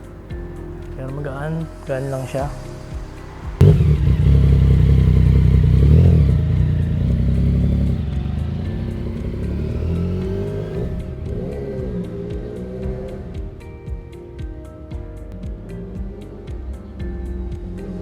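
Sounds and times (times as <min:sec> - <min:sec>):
motorcycle engine running loud: 0:03.6 - 0:13.2.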